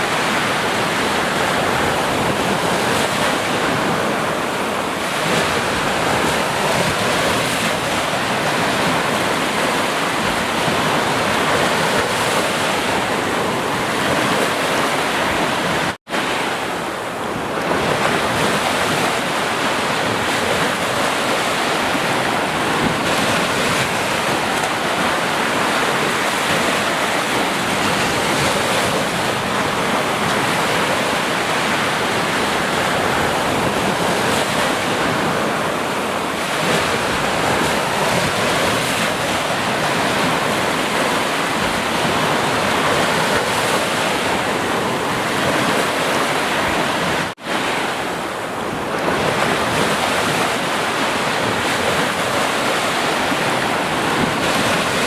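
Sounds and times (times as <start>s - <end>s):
sea waves washing: 0.0s - 55.0s.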